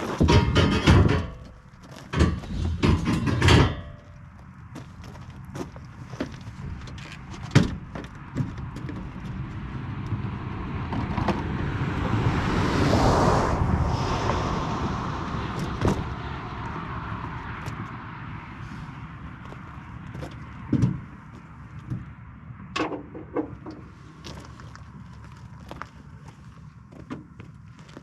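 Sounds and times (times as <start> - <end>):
vehicle passing by: 8.2 - 22.4.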